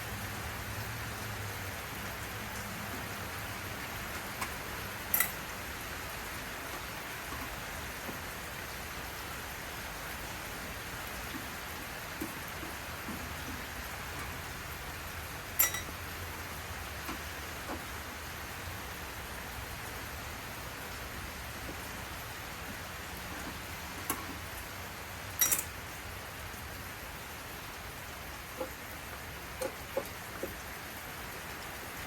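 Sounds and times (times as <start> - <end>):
metallic clinks on sheet metal: 5.1 - 5.5, 15.6 - 15.9, 25.4 - 25.7.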